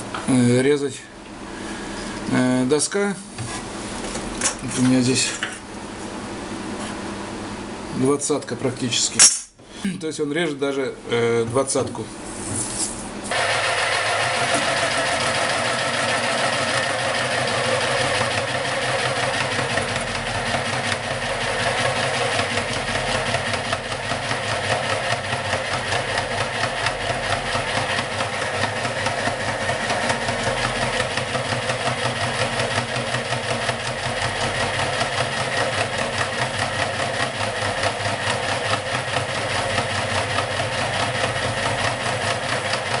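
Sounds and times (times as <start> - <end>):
electric jigsaw cutting board: 13.3 - 43.0.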